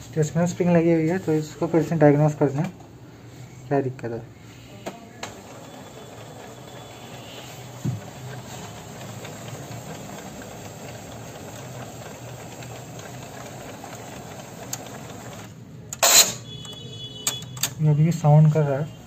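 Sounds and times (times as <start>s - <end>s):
printer knock: 5.2s - 15.5s
printer mechanism running: 5.2s - 18.9s.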